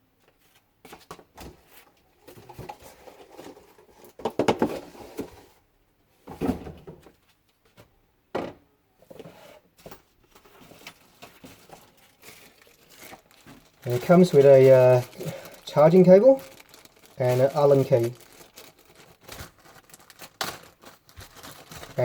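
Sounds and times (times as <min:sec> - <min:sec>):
hands rummaging through packaging: 0:09.8 - 0:22.0.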